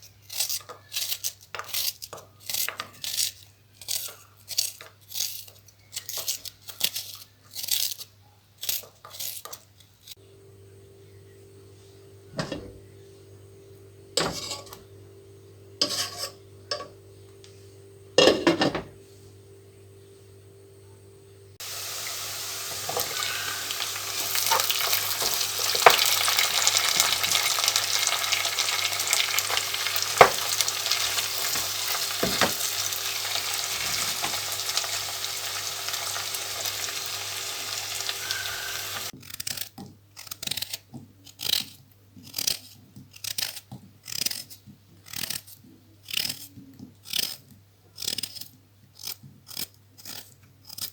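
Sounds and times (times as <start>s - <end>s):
food sizzling in hot oil: 15.8s - 16.9s, 21.6s - 39.1s.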